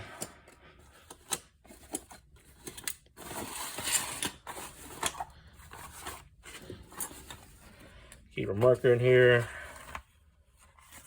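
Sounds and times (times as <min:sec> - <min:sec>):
hand tools rustling and clinking: 0:01.0 - 0:07.9.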